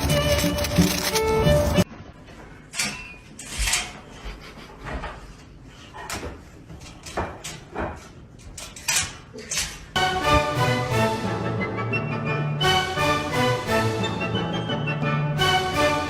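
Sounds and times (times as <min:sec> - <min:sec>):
rustling: 0:00.0 - 0:01.9.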